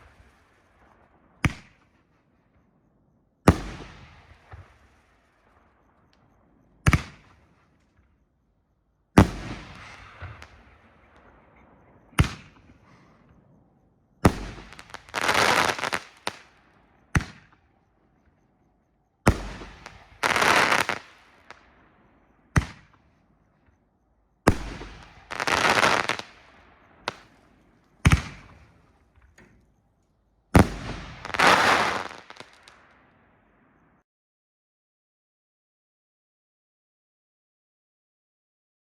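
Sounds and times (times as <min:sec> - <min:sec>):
loud crackling fireworks burst: 0:00.0 - 0:01.7, 0:09.2 - 0:13.4, 0:14.3 - 0:17.6, 0:19.3 - 0:21.7, 0:22.6 - 0:23.0, 0:24.5 - 0:28.7, 0:30.6 - 0:33.0
fireworks launch bang: 0:09.2 - 0:13.4, 0:27.0 - 0:29.6, 0:30.6 - 0:32.9.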